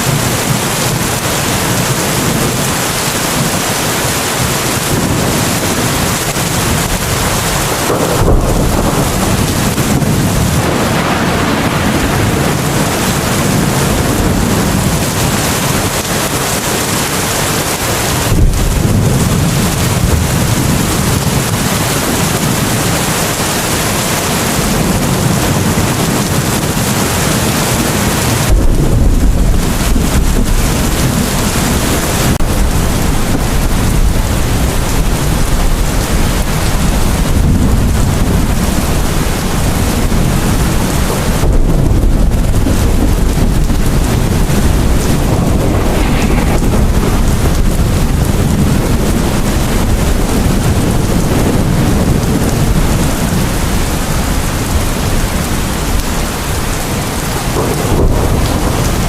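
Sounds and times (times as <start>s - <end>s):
heavy rain: 0.0s - 59.0s
thunder rumbling: 0.0s - 59.0s.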